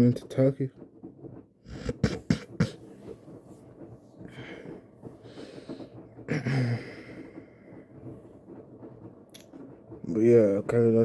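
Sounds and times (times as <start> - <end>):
person breathing close: 4.2 - 7.8.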